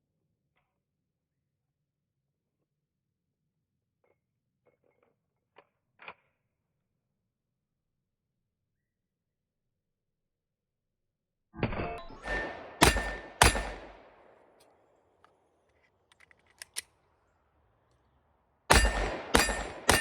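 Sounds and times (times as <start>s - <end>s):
pistol shots: 12.2s - 14.4s, 18.7s - 20.0s.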